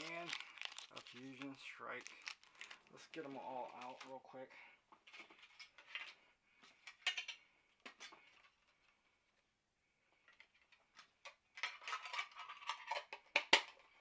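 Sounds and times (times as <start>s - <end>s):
foil packs crinkling: 0.0s - 4.3s.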